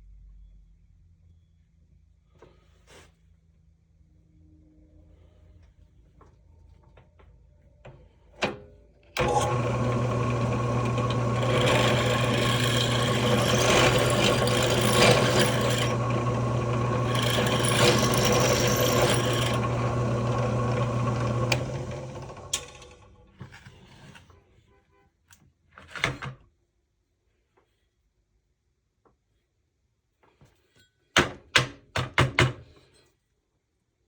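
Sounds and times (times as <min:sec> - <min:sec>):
power drill cutting metal: 0:09.2 - 0:23.0.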